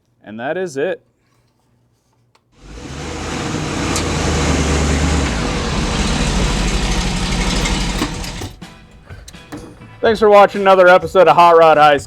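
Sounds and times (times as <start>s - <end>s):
road noise: 2.6s - 8.9s
vehicle engine rumble: 2.6s - 9.2s.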